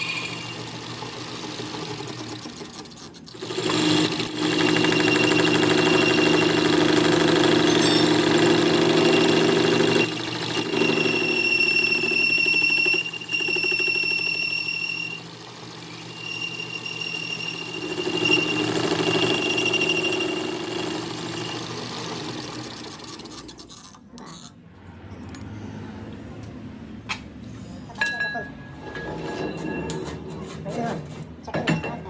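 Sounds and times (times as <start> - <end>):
metal lathe humming: 0.0 - 23.3
high-pitched cutting whine: 3.9 - 21.8.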